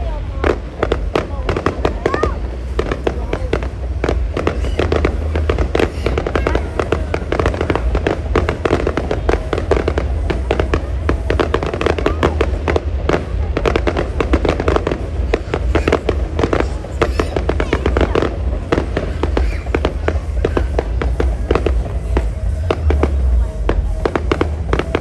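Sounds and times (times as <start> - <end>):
fireworks bangs and crackles: 0.0 - 25.0.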